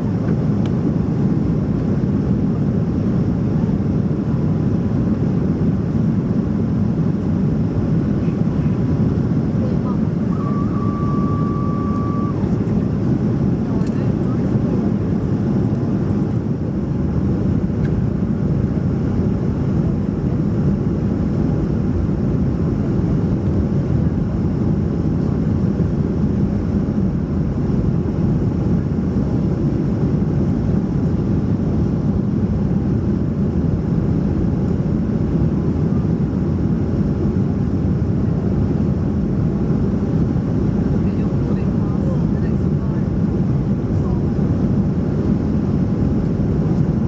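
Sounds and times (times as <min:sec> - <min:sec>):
aircraft cabin engine rush: 0:00.0 - 0:47.0
faint high whine: 0:07.0 - 0:16.3.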